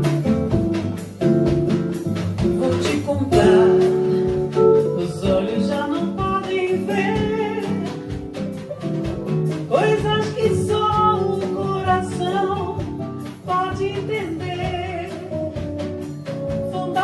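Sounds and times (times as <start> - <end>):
bossa nova trio playing: 0.0 - 17.0
person singing: 2.5 - 8.3, 9.7 - 15.5, 16.6 - 17.0.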